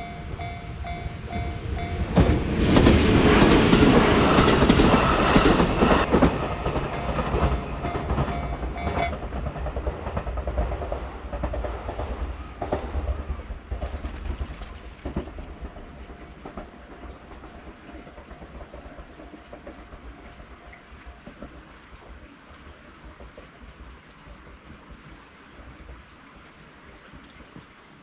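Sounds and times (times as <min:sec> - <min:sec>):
crossing warning bell ringing: 0:00.0 - 0:09.3
wheels clicking over rail joints: 0:00.0 - 0:25.0
train passing: 0:00.0 - 0:25.3.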